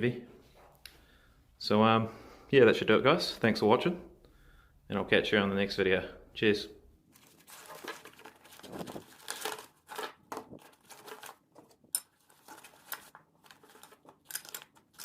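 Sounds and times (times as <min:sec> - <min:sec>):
rustling and crinkling handling: 0:07.1 - 0:15.0.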